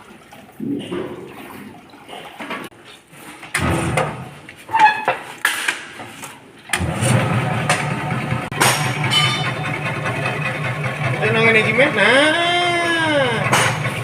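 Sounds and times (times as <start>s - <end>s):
machine knocks and rattles: 7.5s - 11.2s.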